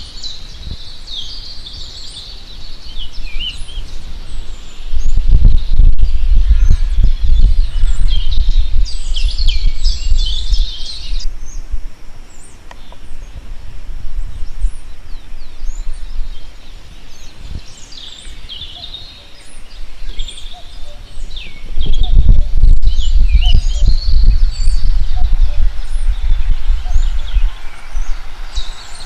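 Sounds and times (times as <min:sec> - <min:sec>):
small birds chirping: 0:00.0 - 0:29.0
low rumble: 0:03.2 - 0:12.0, 0:19.7 - 0:29.0.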